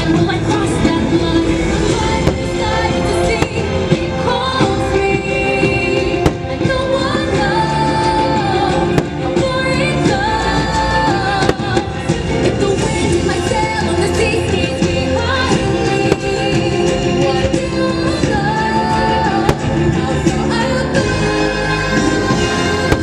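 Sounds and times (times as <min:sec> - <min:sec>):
orchestral music with singing: 0:00.0 - 0:23.0
fireworks bangs: 0:01.3 - 0:04.7.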